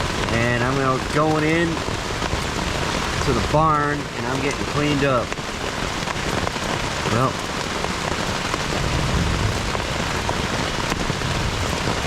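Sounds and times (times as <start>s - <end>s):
heavy rain on tent: 0.0s - 12.0s.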